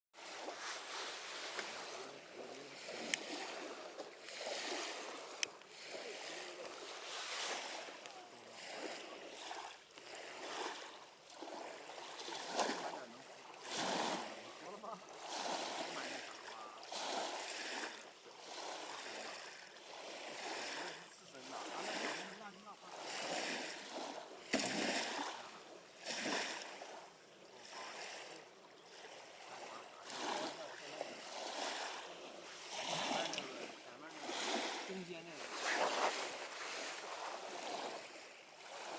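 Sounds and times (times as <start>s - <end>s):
lake water lapping: 0.2s - 38.9s.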